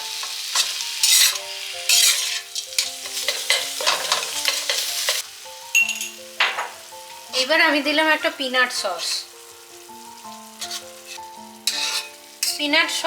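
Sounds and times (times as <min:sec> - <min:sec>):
meat sizzling in oil: 0:00.0 - 0:13.0
soft melody: 0:00.0 - 0:13.0
spoon scraping pan: 0:00.2 - 0:05.2, 0:10.6 - 0:13.0.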